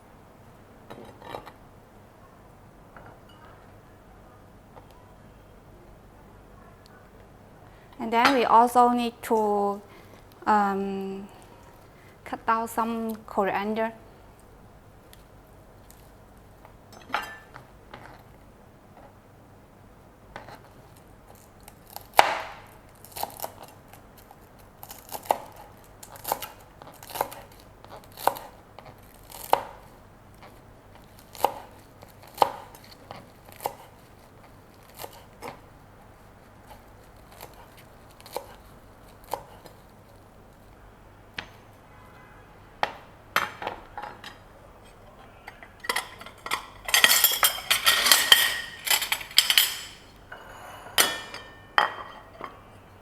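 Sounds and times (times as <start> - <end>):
knife chopping on cutting board: 31.3 - 32.8.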